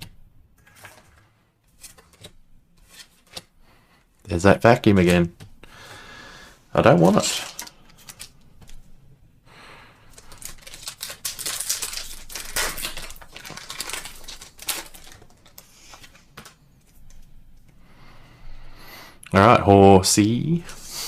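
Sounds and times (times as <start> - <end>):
foil wrapper crinkling: 6.9 - 8.4, 10.1 - 16.6.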